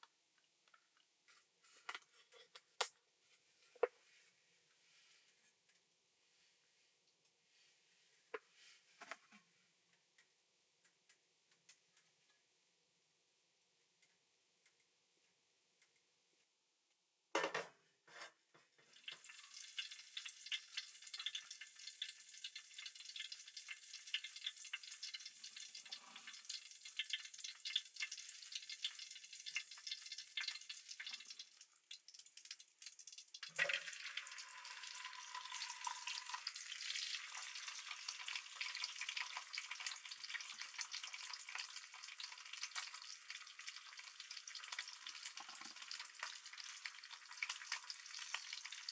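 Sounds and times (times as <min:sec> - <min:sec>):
food sizzling in a pan: 0:18.8 - 0:48.9.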